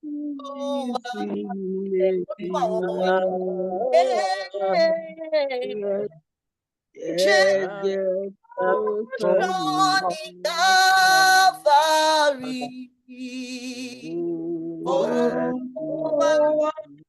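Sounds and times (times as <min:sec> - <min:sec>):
voices singing worship chorus: 0:00.0 - 0:06.2, 0:07.0 - 0:17.0.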